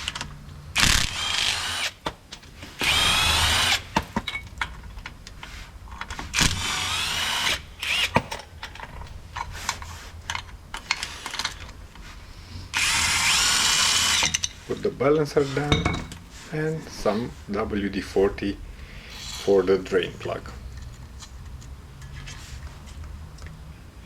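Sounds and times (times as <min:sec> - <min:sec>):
impact driver whining: 0:00.8 - 0:02.0, 0:02.8 - 0:04.0, 0:06.3 - 0:08.4, 0:12.7 - 0:14.4.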